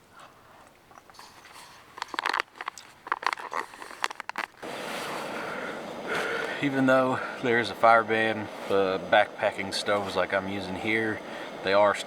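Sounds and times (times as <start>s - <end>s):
foil pouch crinkling: 1.1s - 4.7s
steady hiss: 4.6s - 12.0s.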